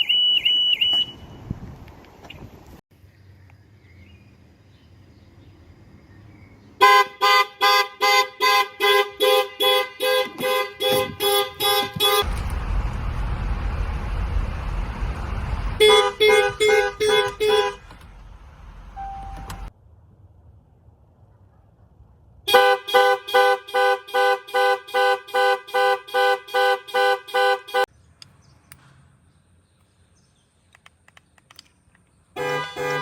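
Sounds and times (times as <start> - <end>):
car horn honking rapidly: 6.8 - 12.4, 15.8 - 17.9, 19.0 - 19.7, 22.5 - 27.9, 32.4 - 33.0
low rumbling noise: 12.2 - 17.0.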